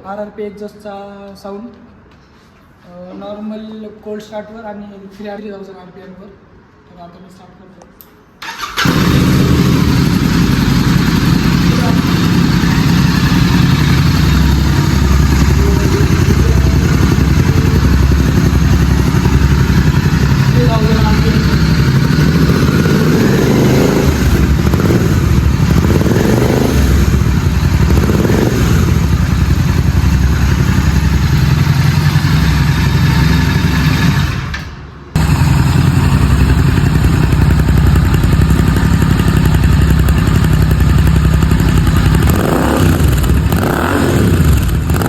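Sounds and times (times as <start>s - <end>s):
motorcycle engine running: 8.6s - 34.6s, 35.2s - 45.0s.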